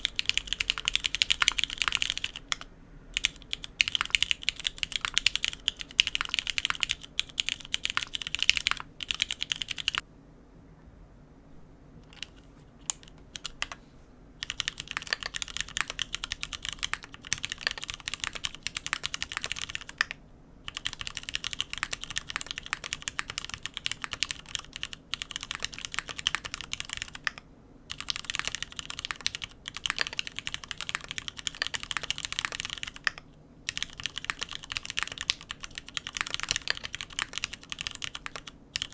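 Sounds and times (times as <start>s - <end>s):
mechanical keyboard typing: 0.0s - 10.0s, 12.0s - 13.8s, 14.4s - 38.9s.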